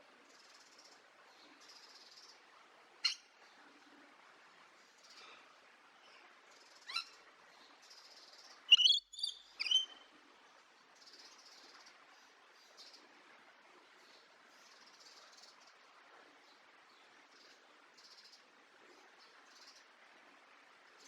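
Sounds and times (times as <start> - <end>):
birds chirping: 8.7 - 10.0
loud sharp bird calls: 8.7 - 10.0.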